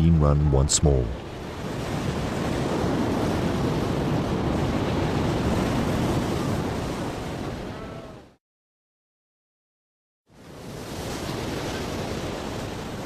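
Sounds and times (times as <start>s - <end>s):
ocean waves and surf: 0.0s - 8.4s, 10.3s - 13.0s.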